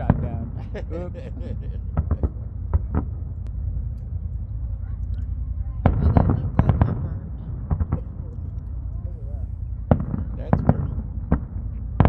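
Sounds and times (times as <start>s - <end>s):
steady low rumble: 0.0s - 12.0s
fireworks bangs and crackles: 9.9s - 12.0s.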